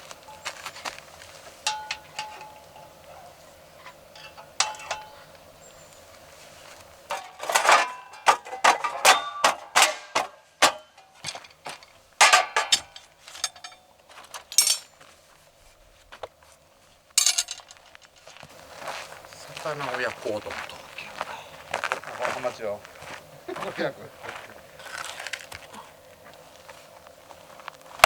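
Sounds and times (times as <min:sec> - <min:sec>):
dishes clinking and knocking: 0:04.2 - 0:05.2, 0:07.1 - 0:13.8.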